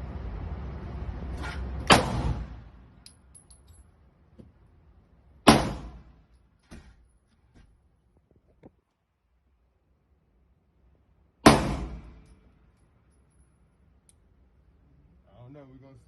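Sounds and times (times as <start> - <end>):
loud gunshots: 1.9 - 2.5, 5.5 - 6.1, 11.4 - 12.2.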